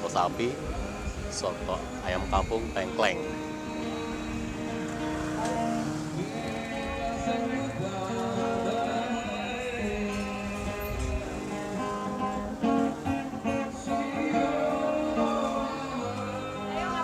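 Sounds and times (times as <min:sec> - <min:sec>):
acoustic guitar: 0:00.0 - 0:17.0
person singing: 0:00.3 - 0:17.0.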